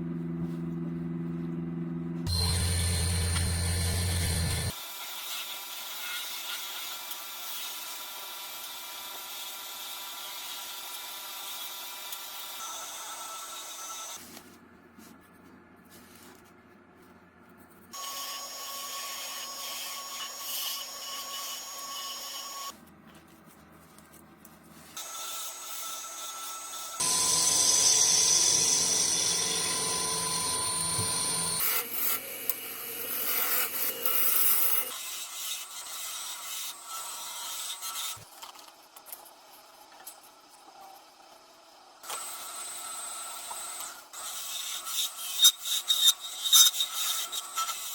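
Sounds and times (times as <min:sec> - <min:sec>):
lathe running: 0:02.3 - 0:04.7, 0:27.0 - 0:34.9
tool scraping spinning wood: 0:02.3 - 0:04.7.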